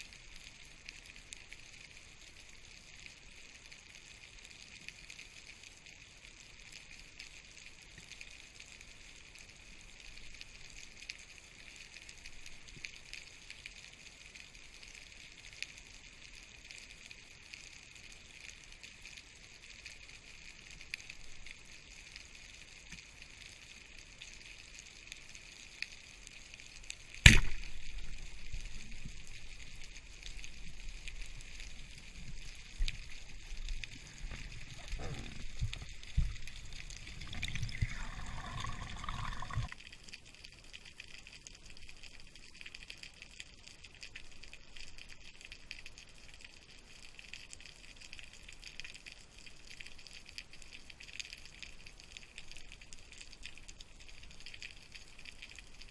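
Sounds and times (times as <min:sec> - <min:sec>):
steady underwater hiss: 0:00.0 - 0:55.9
speargun shot crack: 0:27.2 - 0:28.0.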